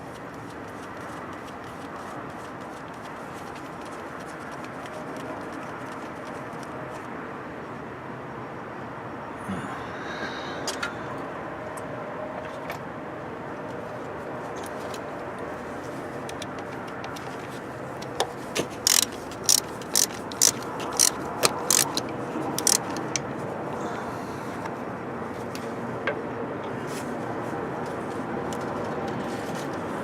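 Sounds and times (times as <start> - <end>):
hand ratchet clicking: 18.6 - 23.2.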